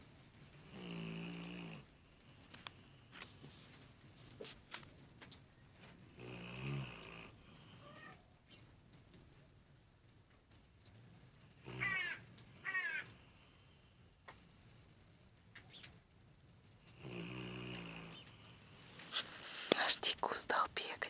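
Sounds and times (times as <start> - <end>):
dog snoring: 0.6 - 2.0, 6.1 - 7.8, 16.9 - 19.7.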